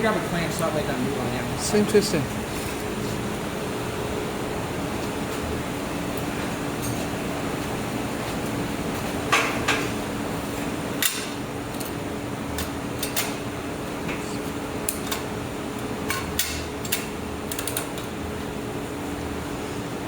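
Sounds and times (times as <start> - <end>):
machine hum: 0.0 - 9.4.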